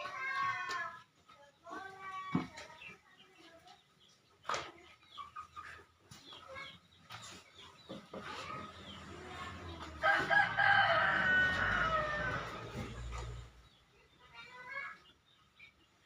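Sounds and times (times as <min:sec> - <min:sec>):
rooster crowing: 0:09.8 - 0:12.8.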